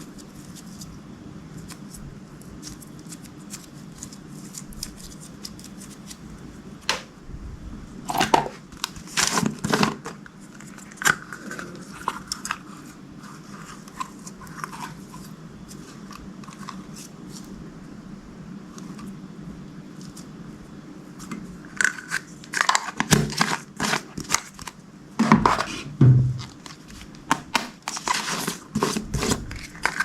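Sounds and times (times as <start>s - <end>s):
loud crinkles: 26.4s - 30.0s.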